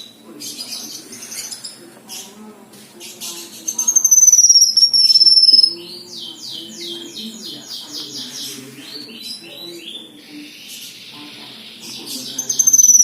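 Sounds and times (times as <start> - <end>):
songbird whistling: 3.6 - 7.6, 12.3 - 13.0.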